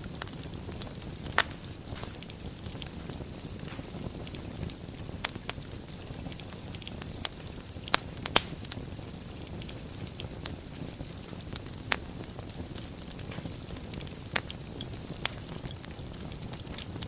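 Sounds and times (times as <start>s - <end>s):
wood fire burning with crackles: 0.0s - 17.0s.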